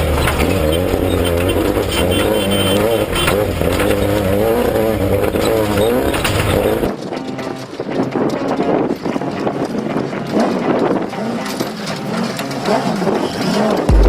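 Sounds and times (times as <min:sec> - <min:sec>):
vehicle engine revving: 0:00.0 - 0:06.9, 0:11.1 - 0:14.0
knocks and rattles: 0:00.0 - 0:13.1.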